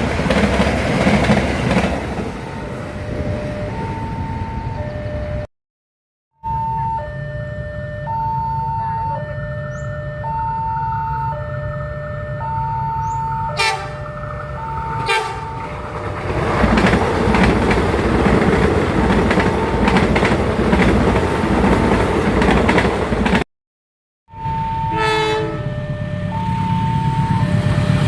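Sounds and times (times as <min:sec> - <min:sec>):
train wheels clattering on rails: 0:00.0 - 0:02.4, 0:15.0 - 0:23.4
two-tone warning alarm: 0:02.3 - 0:05.5, 0:06.4 - 0:15.8, 0:19.0 - 0:20.3, 0:24.3 - 0:28.0
train horn toots: 0:13.4 - 0:14.2, 0:14.9 - 0:15.7, 0:24.8 - 0:27.9.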